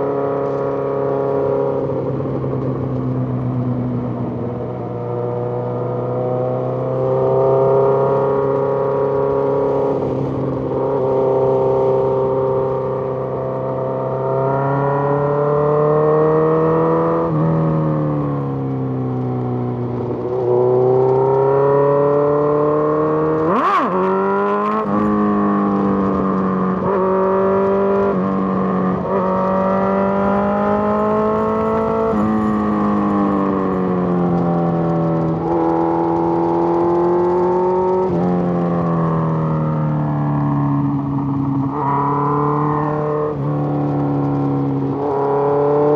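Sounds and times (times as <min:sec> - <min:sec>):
motorcycle engine pulling through gears: 0:18.6 - 0:45.9.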